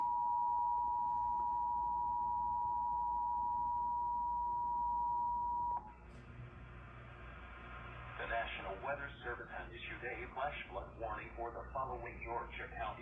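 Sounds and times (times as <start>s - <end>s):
two-tone alarm: 0.0s - 5.9s.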